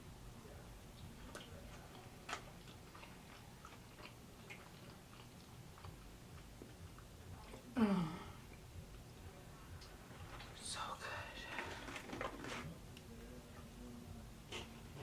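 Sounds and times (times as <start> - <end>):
chewing with wet mouth clicks: 0.9 - 7.7.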